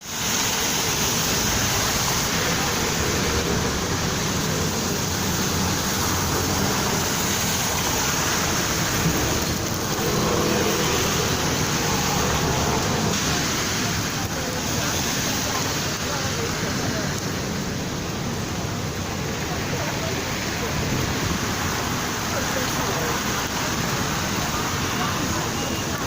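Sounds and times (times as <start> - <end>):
street traffic hiss: 0.0 - 26.0
bus engine hum: 0.1 - 26.0.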